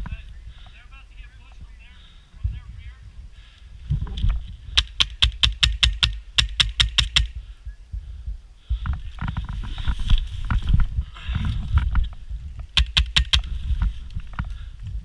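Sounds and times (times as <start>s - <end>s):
airsoft gun firing: 4.8s - 7.4s, 12.8s - 13.4s.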